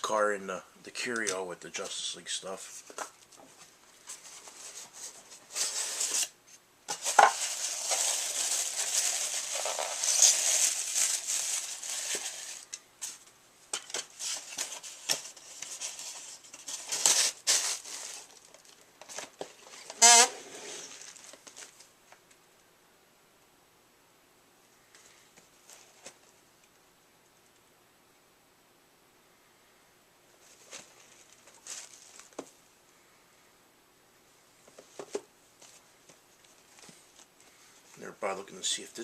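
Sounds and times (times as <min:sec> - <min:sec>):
packaging crinkling and rustling: 0:02.9 - 0:22.4, 0:30.4 - 0:32.6.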